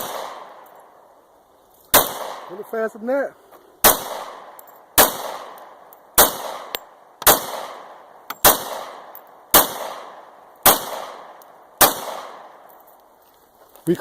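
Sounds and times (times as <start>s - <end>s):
handgun shots with echo: 0.0s - 0.6s, 1.9s - 2.5s, 3.8s - 12.5s.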